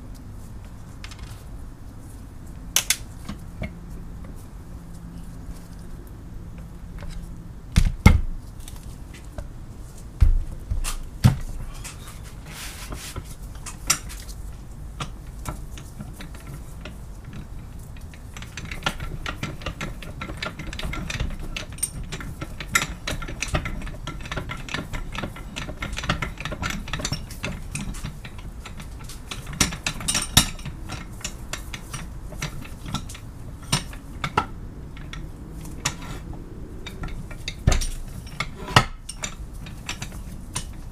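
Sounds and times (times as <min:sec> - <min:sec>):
metal scraping and rattling: 0:10.9 - 0:40.9.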